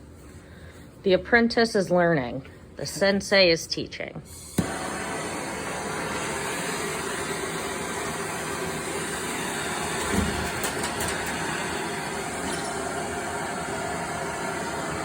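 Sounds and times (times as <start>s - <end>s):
gas torch flame hissing: 4.2s - 15.0s.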